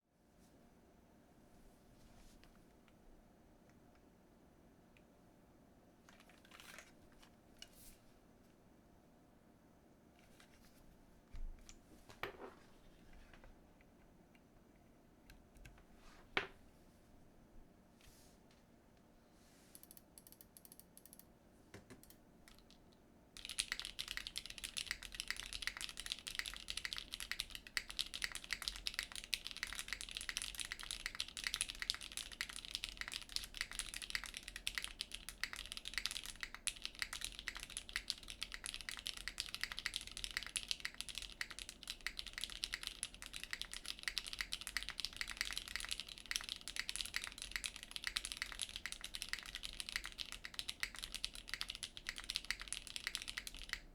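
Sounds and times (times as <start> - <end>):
fast typing on mechanical keyboard: 23.4 - 53.9.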